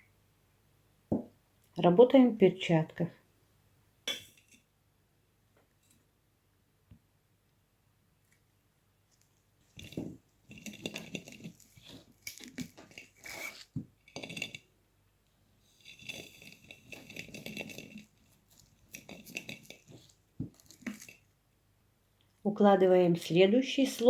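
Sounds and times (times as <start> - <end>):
pine cones rustling in a jar: 9.1 - 14.7, 15.7 - 21.3.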